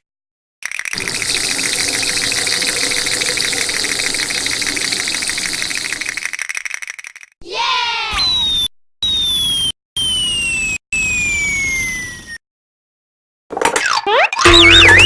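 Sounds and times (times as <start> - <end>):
animal buzzing trill: 1.0 - 6.3.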